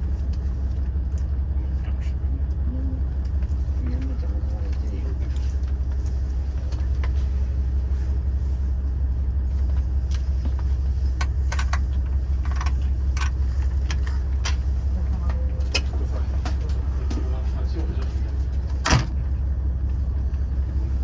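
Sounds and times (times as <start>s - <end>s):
train rumble inside cabin: 0.0s - 21.0s
sharp clicks and rattles: 10.1s - 17.3s.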